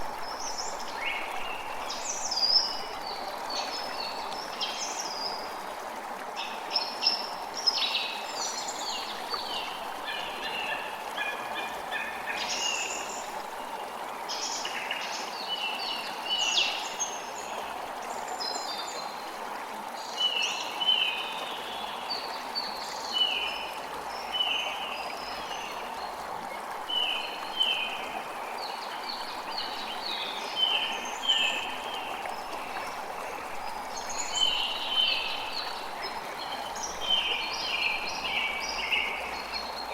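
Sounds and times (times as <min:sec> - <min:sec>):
running water: 0:00.0 - 0:39.9.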